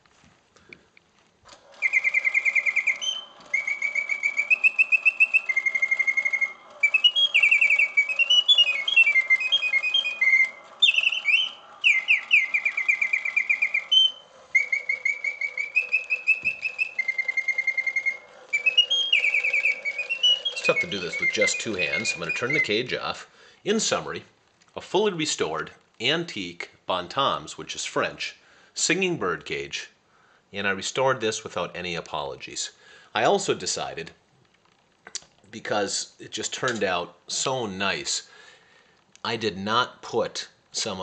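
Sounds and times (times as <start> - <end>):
clockwork whirr: 1.5 - 25.9
mechanical bird whistle warbling: 1.6 - 23.1.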